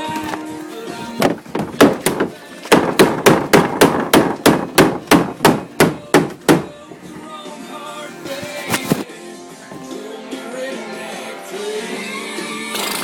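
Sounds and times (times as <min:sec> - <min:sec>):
sharp knocks: 0:01.2 - 0:06.7.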